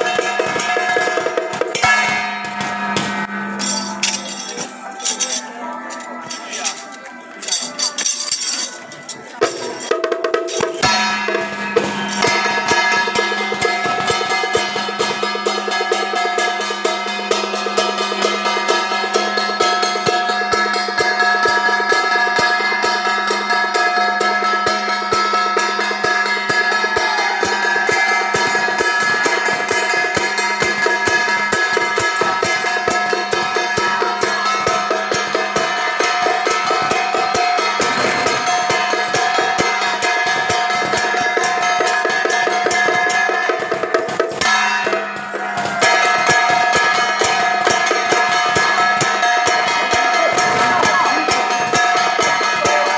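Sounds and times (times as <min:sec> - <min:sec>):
sustained tones: 0:01.8 - 0:07.4
rapid dense drumming: 0:25.1 - 0:52.9.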